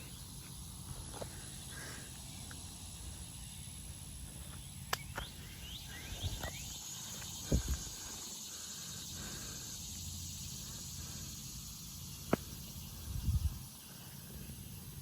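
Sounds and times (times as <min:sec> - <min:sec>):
insect drone: 0:00.0 - 0:15.0
bird chirps: 0:04.5 - 0:09.3.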